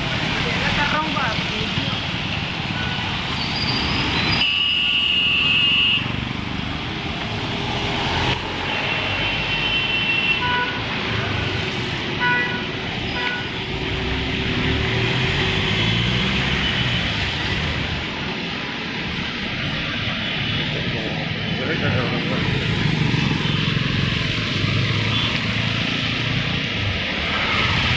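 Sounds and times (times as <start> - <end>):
vehicles passing on wet road: 0.0 - 27.9
car horn: 4.4 - 6.2, 8.8 - 10.8, 12.2 - 13.6.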